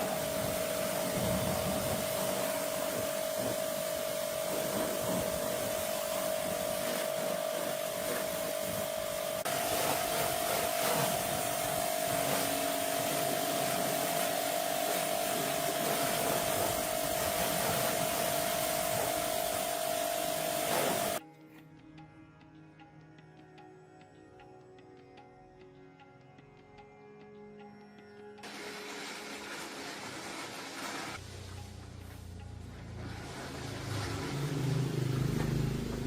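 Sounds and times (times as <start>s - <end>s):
noisy hiss: 0.0s - 21.2s
small electric motor whining: 0.0s - 21.2s.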